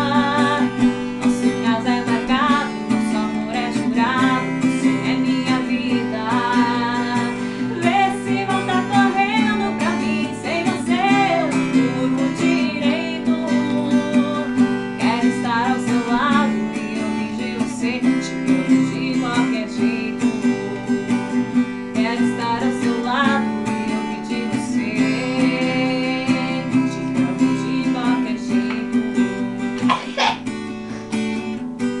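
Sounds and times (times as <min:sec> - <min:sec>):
woman singing: 0:00.0 - 0:29.8
acoustic guitar strummed chords: 0:00.0 - 0:32.0.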